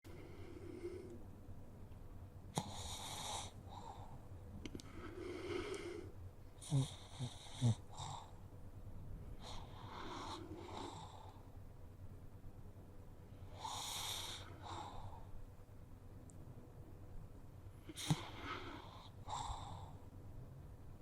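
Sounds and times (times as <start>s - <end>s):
dog snoring gently: 2.5s - 4.1s, 6.6s - 8.3s, 9.4s - 11.4s, 13.6s - 15.1s, 17.8s - 19.9s.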